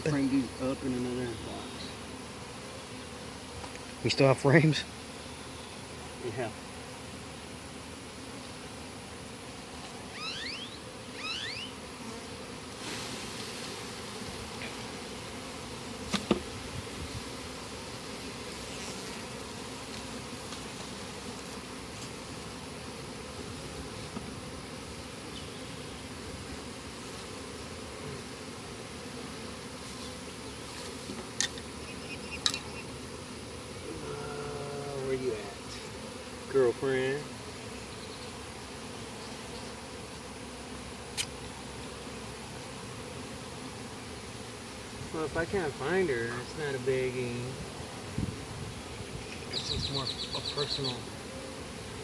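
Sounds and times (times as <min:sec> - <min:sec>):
bees buzzing: 0:00.0 - 0:52.0
short rising chirps: 0:10.1 - 0:11.8.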